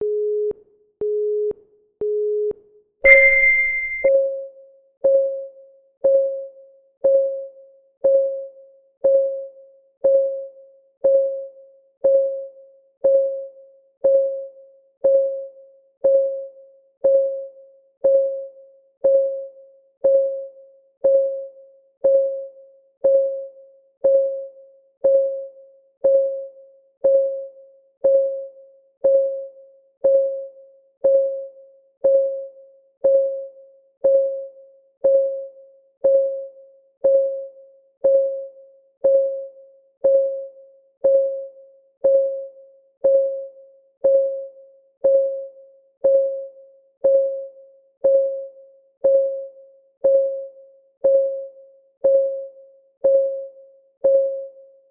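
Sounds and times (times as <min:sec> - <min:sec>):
electronic countdown beeps: 0:03.1 - 0:04.1.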